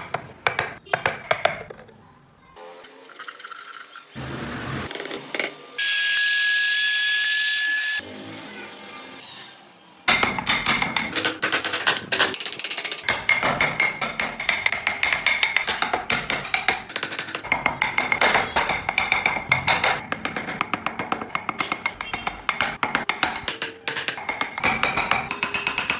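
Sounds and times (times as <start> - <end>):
rhythmic percussive music: 10.1 - 25.9.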